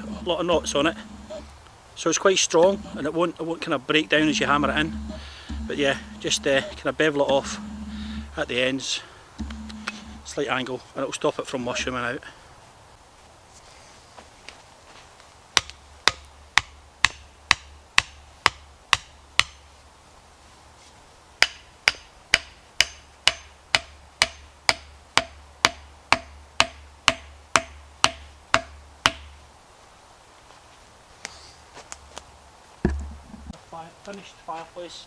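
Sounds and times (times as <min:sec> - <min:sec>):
hammer knocking wooden stake: 0:00.0 - 0:01.5, 0:04.2 - 0:08.4, 0:09.4 - 0:10.3, 0:15.6 - 0:19.6, 0:21.4 - 0:29.4, 0:32.8 - 0:33.6.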